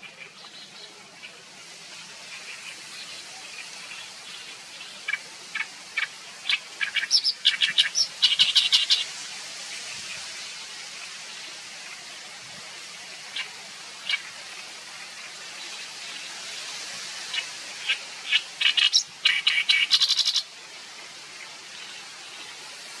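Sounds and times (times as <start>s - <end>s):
background hiss: 0.0s - 23.0s
bird harsh chattering song: 17.8s - 20.5s.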